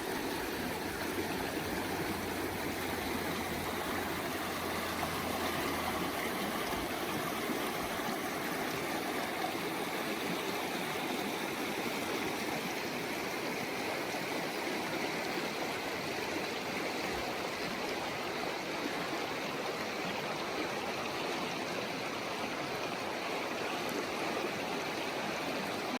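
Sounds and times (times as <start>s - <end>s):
river water rushing over rocks: 0.0s - 26.0s.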